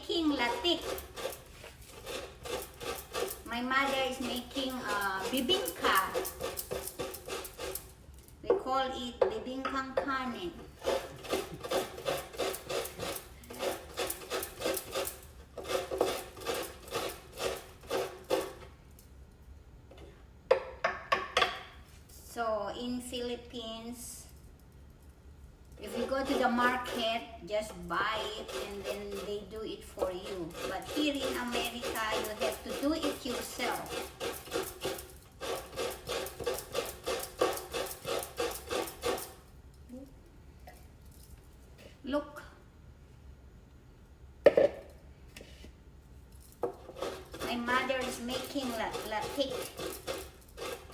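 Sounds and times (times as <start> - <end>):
metal blade scraping coconut: 0.1 - 7.9, 10.8 - 18.6, 25.8 - 39.5, 46.6 - 50.9.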